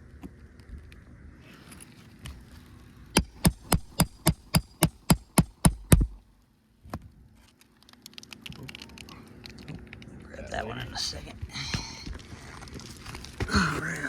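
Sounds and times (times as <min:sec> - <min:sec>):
hammer striking roof: 0:03.2 - 0:06.2.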